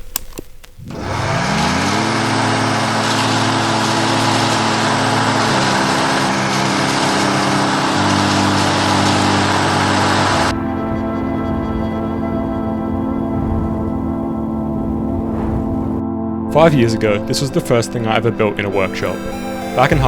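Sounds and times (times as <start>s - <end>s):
motor humming with loud hiss: 18.8s - 20.0s.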